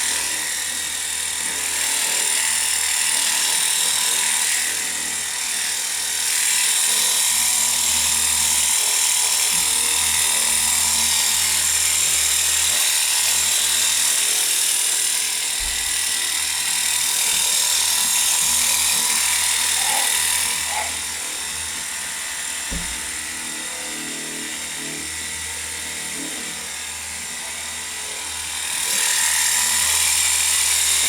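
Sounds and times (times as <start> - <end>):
pressure washer motor whining: 15.2 - 25.5.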